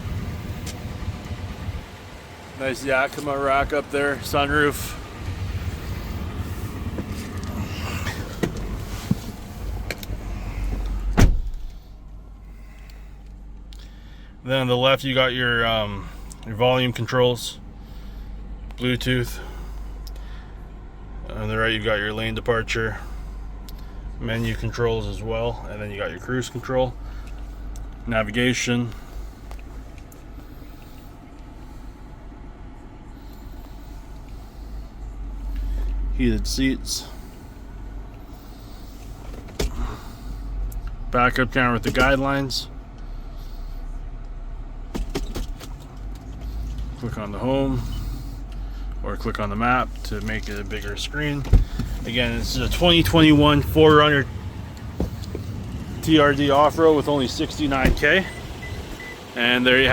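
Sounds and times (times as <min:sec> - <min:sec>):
car engine idling in cabin: 0:00.0 - 0:59.9
car door thud: 0:11.0 - 0:11.8, 0:51.4 - 0:52.0, 0:54.9 - 0:55.5, 0:57.8 - 0:58.1.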